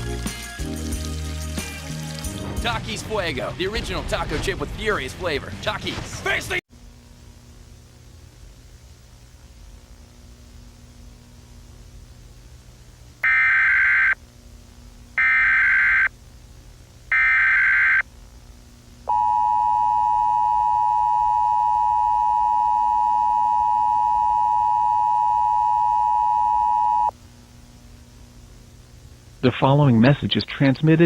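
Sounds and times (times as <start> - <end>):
two-tone attention signal: 19.1 - 27.1.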